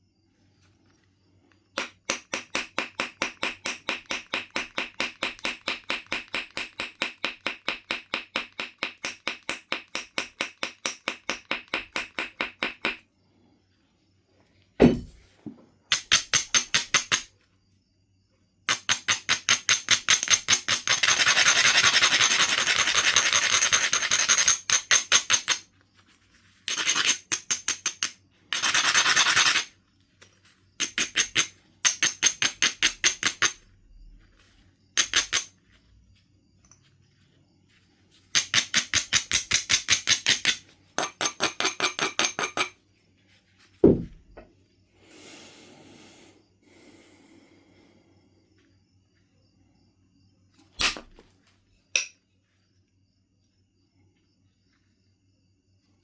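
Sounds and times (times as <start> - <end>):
sharp knock: 14.8 - 15.2, 43.8 - 44.5
stone grinding flint edge: 18.7 - 25.7, 26.6 - 29.7, 30.8 - 33.6, 35.0 - 35.5, 38.3 - 42.7.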